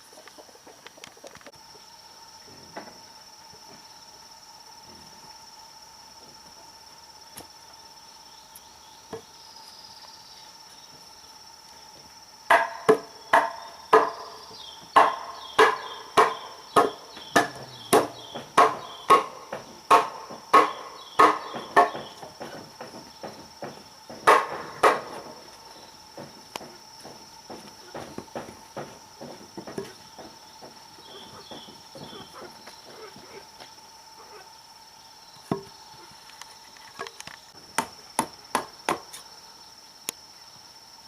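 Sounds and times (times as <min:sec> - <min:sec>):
crickets chirring: 0:00.0 - 0:41.0
hammer blows on wood: 0:12.5 - 0:14.4, 0:15.0 - 0:25.4.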